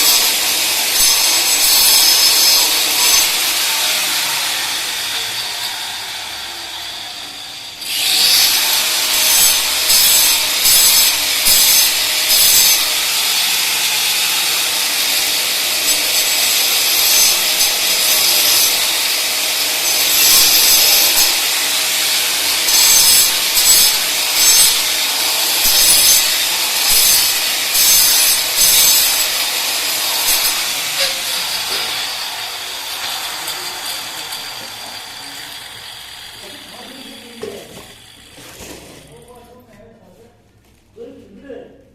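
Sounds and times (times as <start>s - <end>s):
hand saw cutting pipe: 0.0s - 39.1s.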